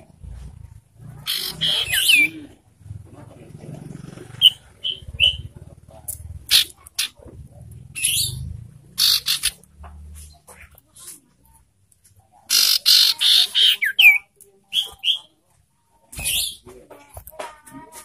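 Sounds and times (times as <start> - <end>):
harsh rasping bird calls: 1.0 - 2.6, 4.2 - 11.1, 12.5 - 15.4, 16.1 - 16.7.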